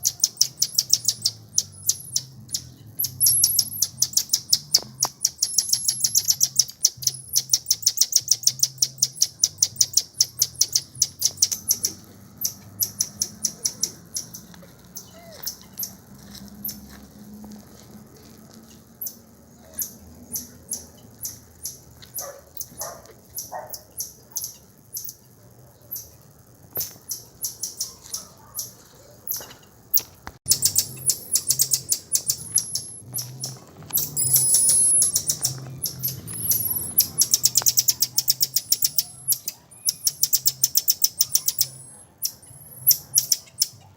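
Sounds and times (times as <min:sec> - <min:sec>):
birds chirping: 0:00.0 - 0:16.8, 0:26.8 - 0:43.9.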